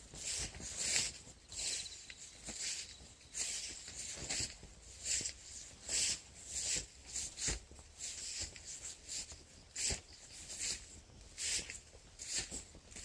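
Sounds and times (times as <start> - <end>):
short rustling bursts: 0.0 - 13.0.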